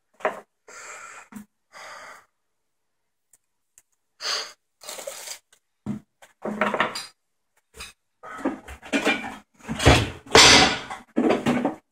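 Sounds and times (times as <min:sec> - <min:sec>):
rustling and scraping objects: 0:04.8 - 0:11.9.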